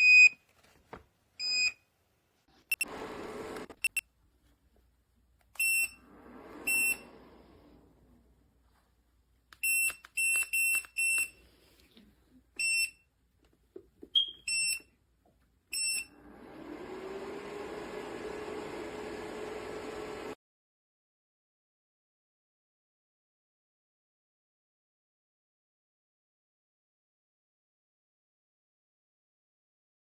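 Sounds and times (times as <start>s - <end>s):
short high beeps: 3.8s - 4.0s.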